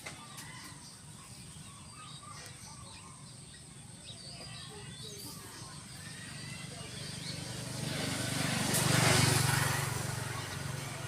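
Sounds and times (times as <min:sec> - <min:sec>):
bird chirps: 0:00.0 - 0:07.8.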